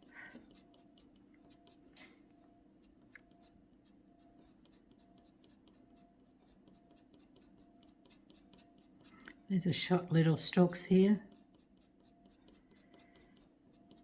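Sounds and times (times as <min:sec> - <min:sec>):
tool scratching a board: 0:03.4 - 0:09.2.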